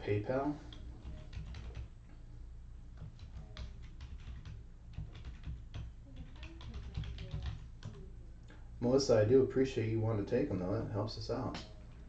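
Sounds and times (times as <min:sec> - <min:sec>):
computer keyboard typing: 0:00.7 - 0:02.0, 0:03.0 - 0:08.0.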